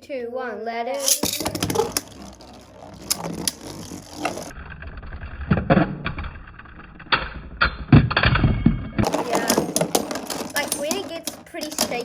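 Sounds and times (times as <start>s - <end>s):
spinning tops clacking: 1.0s - 4.6s, 9.0s - 12.0s
spinning tops whirring and scraping: 1.0s - 6.9s, 9.0s - 12.0s.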